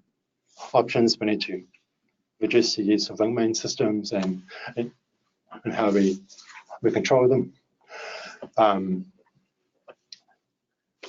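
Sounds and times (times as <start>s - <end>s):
person speaking: 2.4s - 5.0s, 5.6s - 9.2s.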